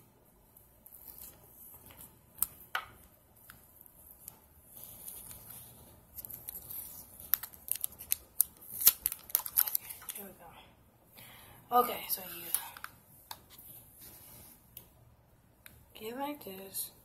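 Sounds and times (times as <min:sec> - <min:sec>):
soft rustle: 0:03.0 - 0:07.8, 0:11.9 - 0:14.8.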